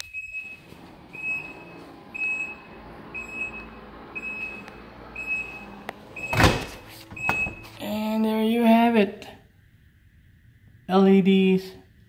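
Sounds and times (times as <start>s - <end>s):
car warning chime beeping: 0.0s - 7.8s.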